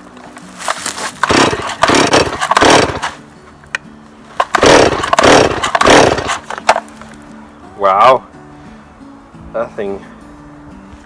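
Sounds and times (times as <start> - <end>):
chainsaw pull-start rasps: 0.6 - 3.2, 4.4 - 6.8.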